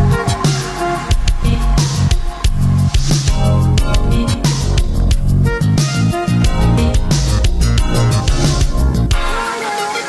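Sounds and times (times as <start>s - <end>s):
electronic music with heavy bass: 0.0s - 10.0s.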